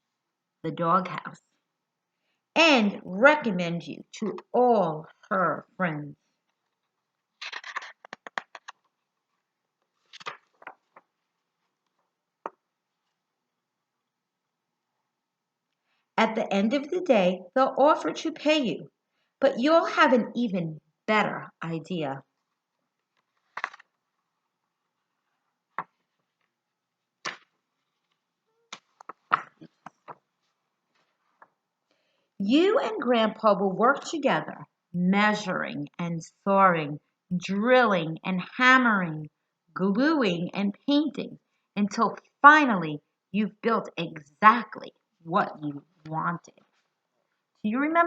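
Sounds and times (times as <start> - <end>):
paper pages rustling: 6.4 - 12.0, 23.0 - 24.0, 27.2 - 31.5.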